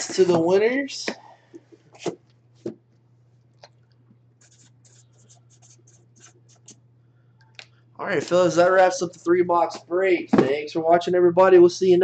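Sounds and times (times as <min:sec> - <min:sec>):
steady low hum: 0:00.0 - 0:12.0
scratchy strokes on surface: 0:04.4 - 0:06.8.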